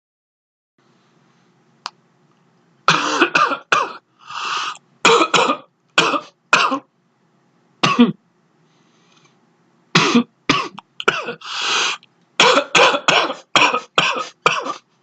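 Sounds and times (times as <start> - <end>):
person coughing dry cough: 2.9 - 4.0, 5.0 - 6.9, 7.8 - 8.2, 10.0 - 11.5, 12.4 - 14.8
drawn-in breath: 4.2 - 4.8, 8.6 - 9.4, 11.4 - 12.1.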